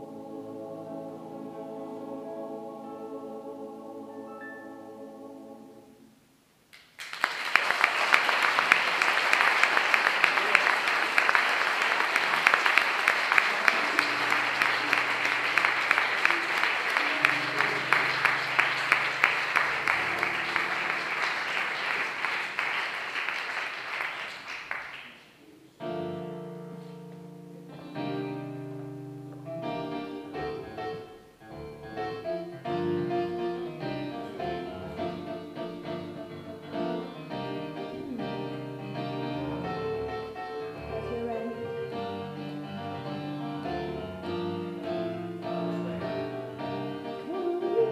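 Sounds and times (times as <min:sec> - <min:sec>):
audience applauding: 0:06.7 - 0:25.5
piano playing slow chords: 0:13.6 - 0:22.0, 0:25.8 - 0:47.9.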